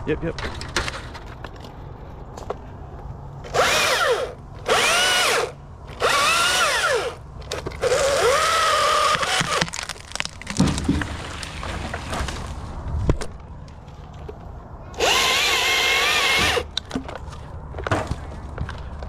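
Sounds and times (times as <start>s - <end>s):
chainsaw cutting wood: 3.5s - 7.2s, 7.8s - 10.0s, 15.0s - 16.7s.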